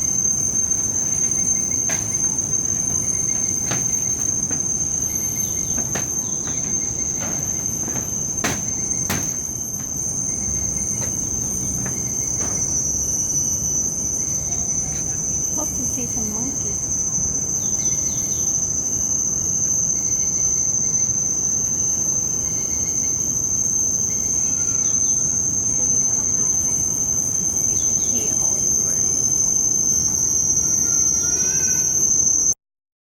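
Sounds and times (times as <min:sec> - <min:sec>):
short chirping calls: 0:00.0 - 0:17.0
forest insects droning: 0:00.0 - 0:32.6.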